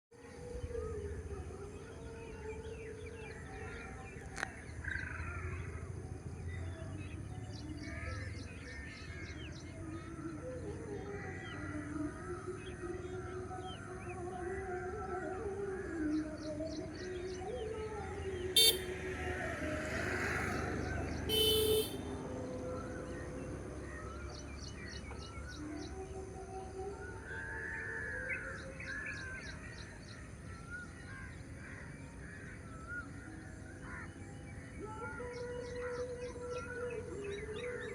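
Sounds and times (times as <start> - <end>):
short horn toots: 18.6 - 18.9, 21.3 - 22.1
small birds chirping: 20.5 - 22.1.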